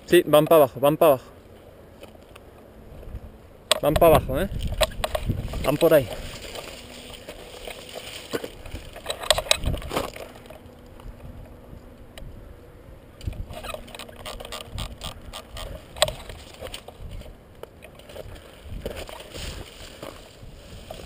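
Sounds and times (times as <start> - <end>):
sharp clicks and knocks: 3.7 - 5.8, 6.5 - 11.6, 13.2 - 19.2
rustling and scuffing: 4.6 - 10.5, 18.0 - 21.0.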